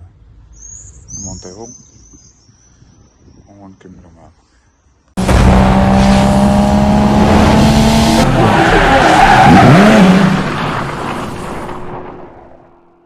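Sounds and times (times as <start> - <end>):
racing car engine: 5.2 - 11.8.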